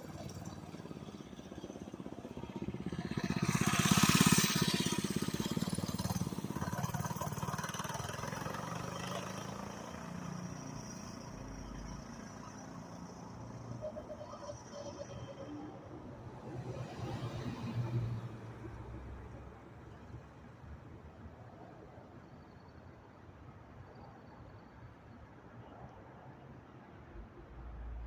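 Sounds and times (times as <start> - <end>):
minibike engine passing: 0.0 - 19.8.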